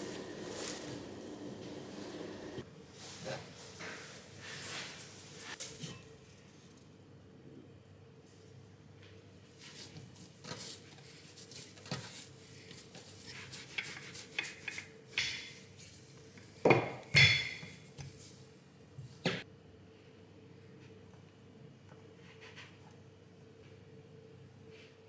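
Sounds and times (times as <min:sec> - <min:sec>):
dishes and cutlery clinking: 0:16.7 - 0:17.8.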